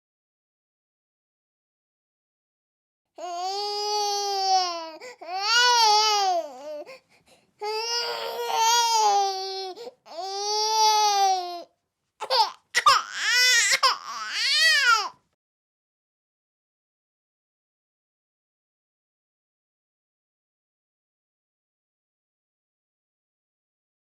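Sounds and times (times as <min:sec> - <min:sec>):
baby crying: 0:03.2 - 0:07.0, 0:07.6 - 0:15.2.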